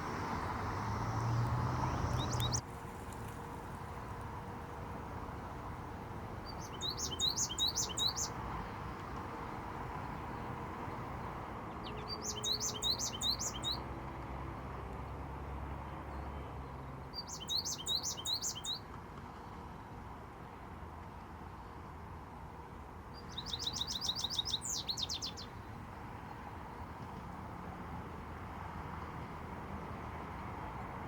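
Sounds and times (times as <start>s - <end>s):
goldfinch singing: 1.9s - 2.6s, 6.4s - 8.4s, 11.8s - 13.8s, 17.2s - 18.8s, 23.2s - 25.6s.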